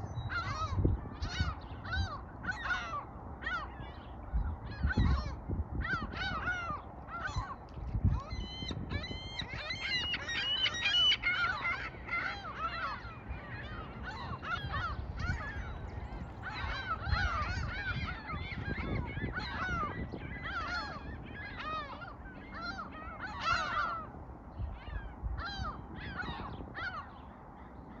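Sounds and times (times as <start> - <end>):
waterbirds calling: 0.0 - 28.0.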